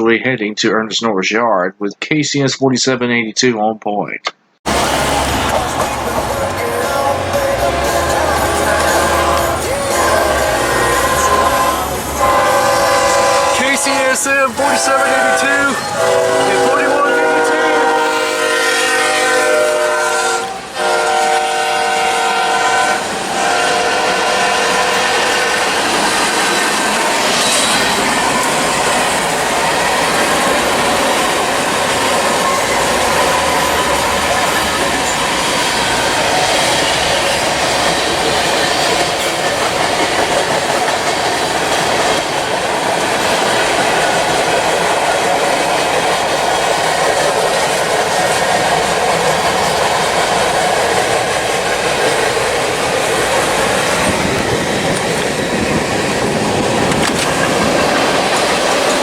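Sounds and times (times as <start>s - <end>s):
train wheels rolling on rails: 4.7s - 59.0s.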